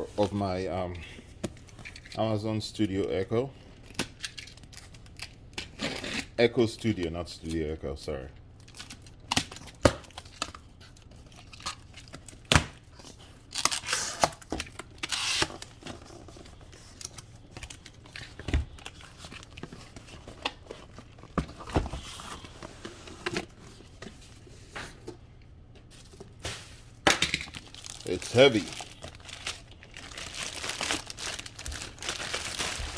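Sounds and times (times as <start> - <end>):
packaging rustling and crinkling: 8.6 - 24.6, 26.0 - 32.9
cardboard tearing: 27.6 - 32.9.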